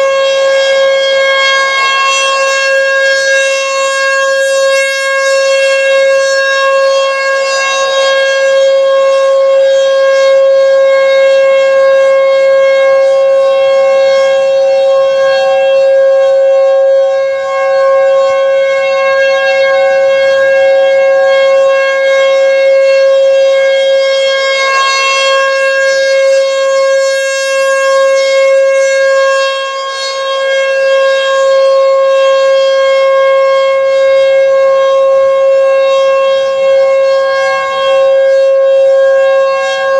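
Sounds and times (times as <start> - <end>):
fainter second siren tone: 0.0 - 39.9
warning siren steady tone: 0.0 - 39.9.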